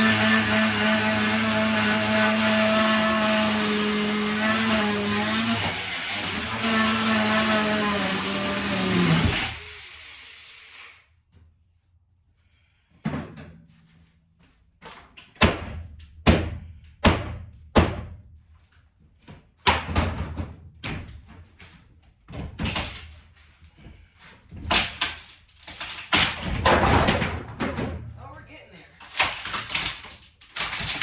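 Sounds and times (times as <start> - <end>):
heavy knocks and bangs: 15.3 - 18.2, 19.6 - 21.2, 26.2 - 28.2.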